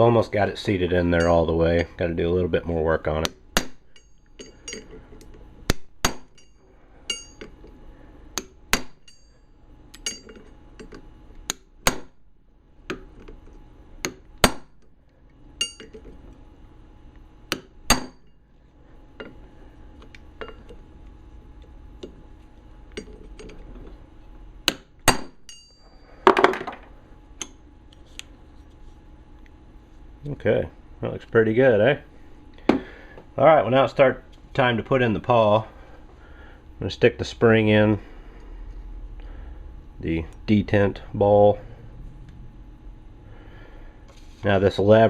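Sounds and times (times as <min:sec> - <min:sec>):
hammer tapping on metal: 0:07.1 - 0:07.5.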